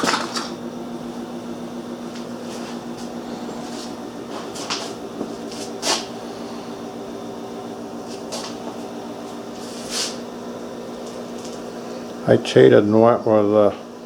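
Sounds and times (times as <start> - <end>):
electrical hum of shop equipment: 0.0 - 14.0
scuffs and rustles: 2.2 - 6.1, 8.1 - 10.2.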